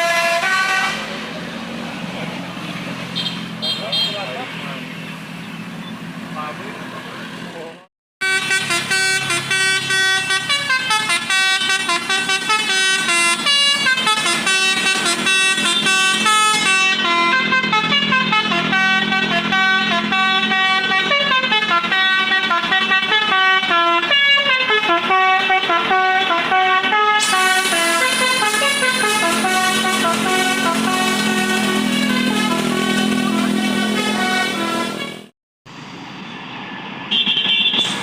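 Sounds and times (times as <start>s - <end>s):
musical bus air horn tune: 0.0s - 1.2s, 8.2s - 35.3s, 37.1s - 38.0s.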